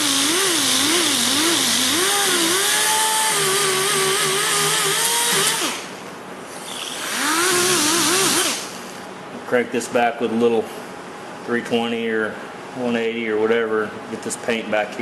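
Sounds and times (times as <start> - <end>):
power sander grinding plastic: 0.0 - 5.8, 6.7 - 8.7.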